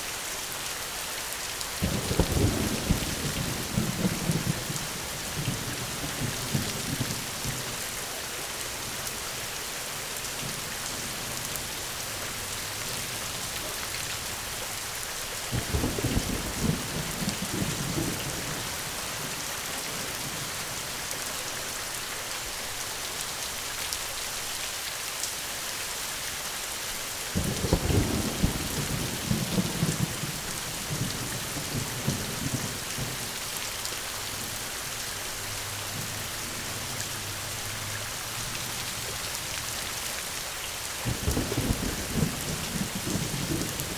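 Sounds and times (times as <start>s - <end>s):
heavy rain: 0.0s - 43.9s
thunder rumbling: 1.8s - 7.8s, 15.5s - 20.7s, 27.4s - 43.9s.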